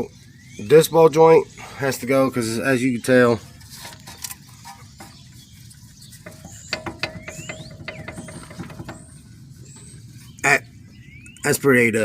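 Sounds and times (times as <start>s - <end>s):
metallic clicks and knocks: 6.2s - 9.2s.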